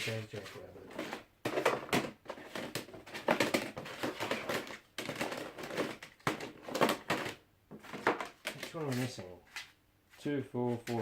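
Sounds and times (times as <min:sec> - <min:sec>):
plastic floppy disks clacking: 0:01.0 - 0:09.0.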